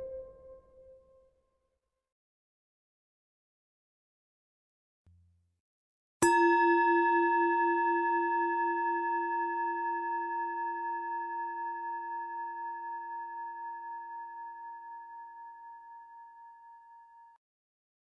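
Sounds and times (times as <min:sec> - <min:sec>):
singing bowl ringing: 0:06.2 - 0:17.3.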